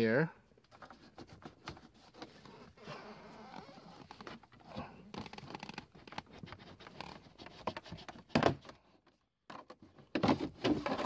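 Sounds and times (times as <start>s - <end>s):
plastic vent clicking and scraping: 9.5s - 11.0s.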